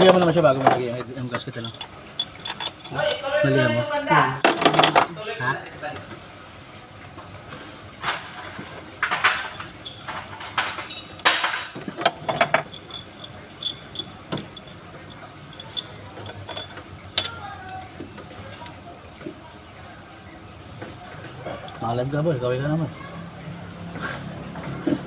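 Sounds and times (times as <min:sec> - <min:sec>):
metallic clinks of hand tools: 0:01.4 - 0:03.4, 0:09.2 - 0:17.8.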